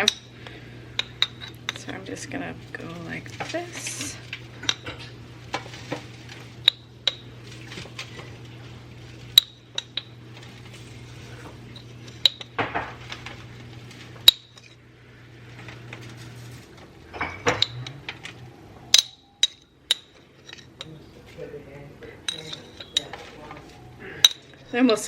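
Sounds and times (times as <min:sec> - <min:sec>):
low steady hum: 0:00.0 - 0:25.0
scraping rustles: 0:15.4 - 0:17.0
glass and metal clinks: 0:22.2 - 0:23.3.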